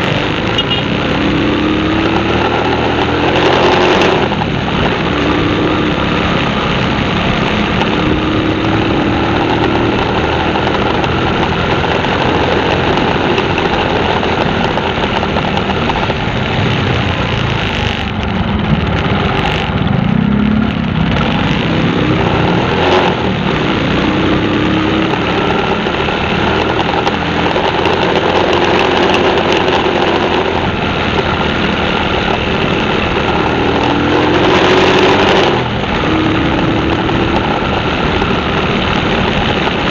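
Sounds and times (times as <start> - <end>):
vehicle engine rumbling: 0.0 - 39.9.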